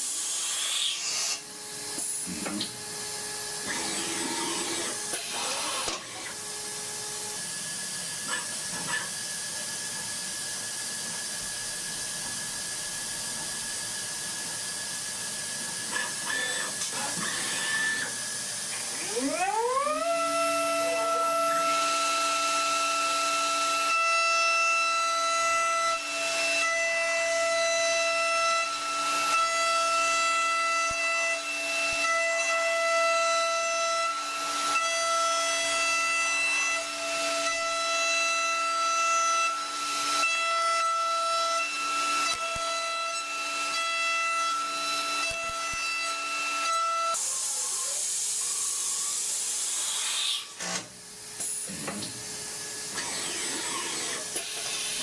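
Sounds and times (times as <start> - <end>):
hiss: 0.0 - 1.5, 47.2 - 50.6
milling machine spindle whine: 0.0 - 23.9, 46.4 - 55.0.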